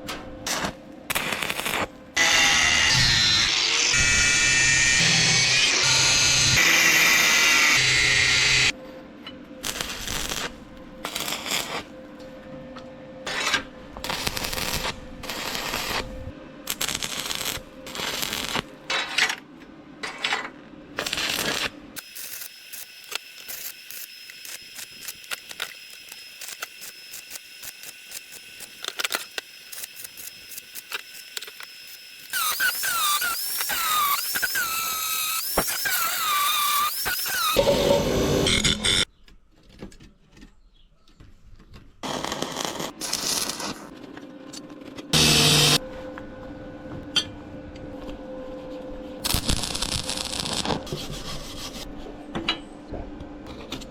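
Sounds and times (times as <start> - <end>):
power tool on steel: 1.5 - 8.7, 22.0 - 39.1, 45.2 - 45.8
rising and falling squeals: 31.8 - 39.1.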